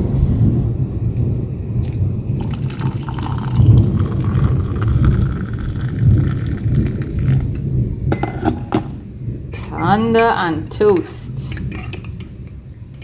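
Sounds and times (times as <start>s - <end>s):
faint rain hiss: 0.0s - 13.0s
thunder rumbling: 0.0s - 13.0s.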